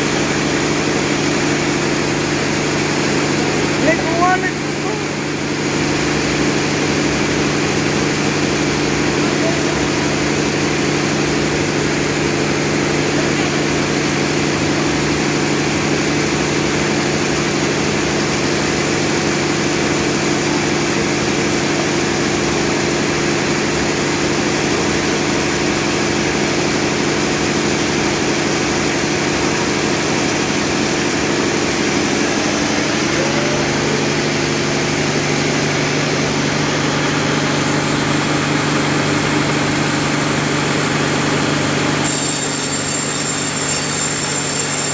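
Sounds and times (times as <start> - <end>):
motor humming: 29.2 - 44.9.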